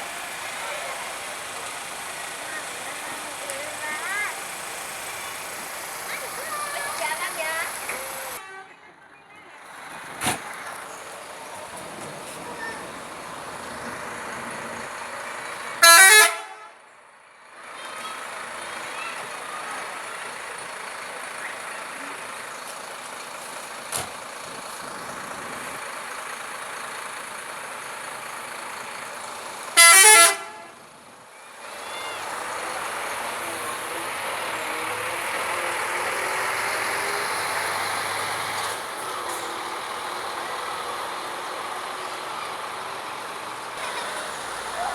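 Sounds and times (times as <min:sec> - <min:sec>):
street and traffic noise: 0:00.0 - 0:44.9
multi-tone musical bus horn: 0:08.2 - 0:09.0, 0:15.7 - 0:16.8, 0:29.7 - 0:30.9.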